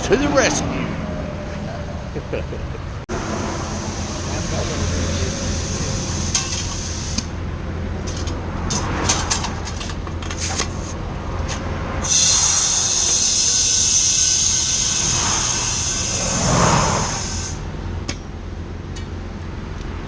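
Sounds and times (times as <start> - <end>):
loud even hiss: 3.1 - 7.3, 12.0 - 17.7
low engine hum: 15.1 - 20.0.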